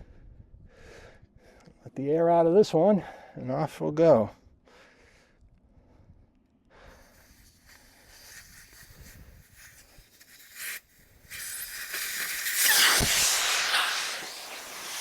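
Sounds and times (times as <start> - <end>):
air hissing from tire valve: 6.9 - 15.0
short air puff: 6.9 - 15.0.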